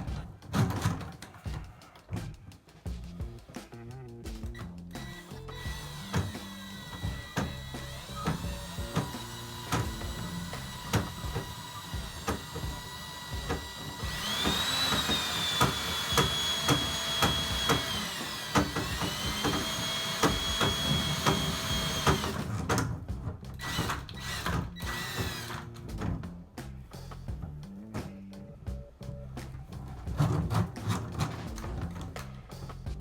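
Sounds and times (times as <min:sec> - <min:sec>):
cable and drum clicking: 0:04.3 - 0:26.3
drill motor whining: 0:04.6 - 0:22.7, 0:23.6 - 0:25.8.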